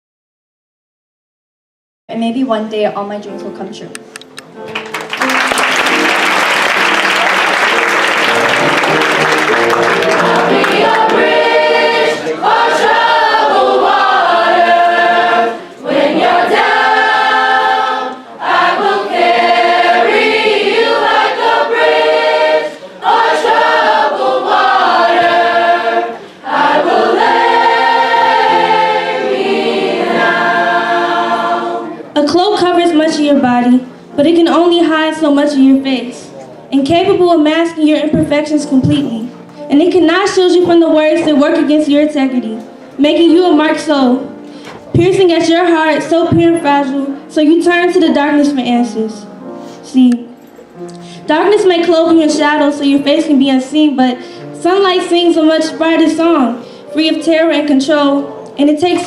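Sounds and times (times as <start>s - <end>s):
applause: 4.7s - 11.2s
choir singing: 5.9s - 32.2s.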